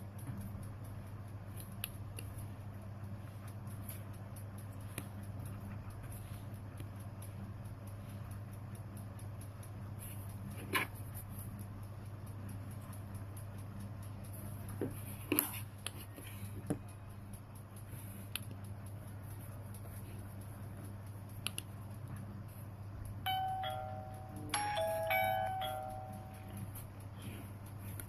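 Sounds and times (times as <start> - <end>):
low hum: 0.0 - 28.0
faint clicks: 3.0 - 23.6
doorbell chime: 23.3 - 26.7.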